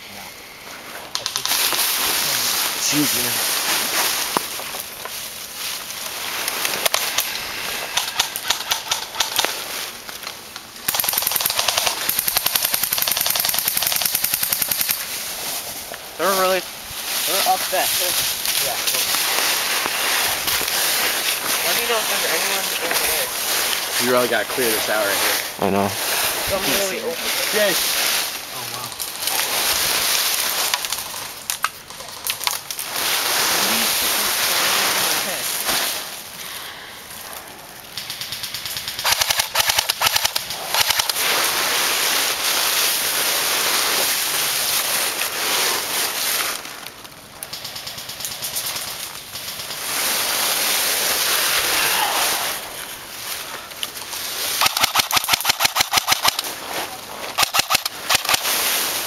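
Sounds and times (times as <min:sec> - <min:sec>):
crunching and rustling: 0:00.3 - 0:38.3, 0:39.0 - 0:59.0
sharp snaps or clicks: 0:01.1 - 0:01.8, 0:06.4 - 0:09.6, 0:10.2 - 0:15.0, 0:38.0 - 0:41.2, 0:54.6 - 0:56.5, 0:57.3 - 0:58.4
airsoft guns firing: 0:10.9 - 0:15.0, 0:37.9 - 0:41.3, 0:54.6 - 0:56.5, 0:57.3 - 0:58.6.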